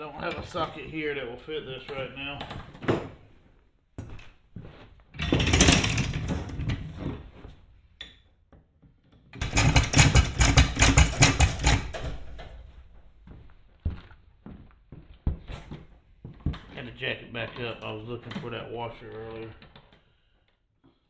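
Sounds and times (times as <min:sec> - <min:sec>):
metal tools clattering: 0:05.2 - 0:07.2, 0:09.4 - 0:13.2.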